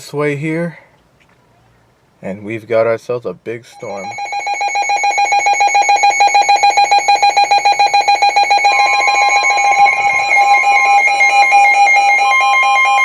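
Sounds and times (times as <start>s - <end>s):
higher steady tone: 3.7s - 13.0s
rapidly pulsing electronic tone: 3.8s - 13.0s.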